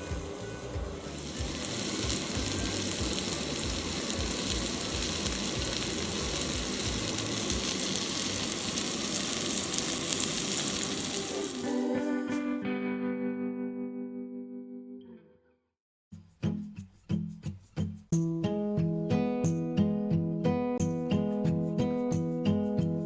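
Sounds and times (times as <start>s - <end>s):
steak sizzling: 0.8s - 12.6s.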